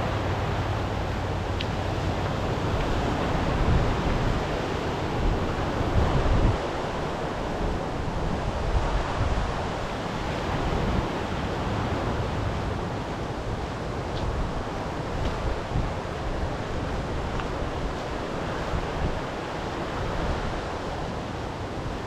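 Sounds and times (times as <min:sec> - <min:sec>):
sea waves washing on shore: 0:00.0 - 0:22.0
wind on microphone: 0:00.0 - 0:22.0.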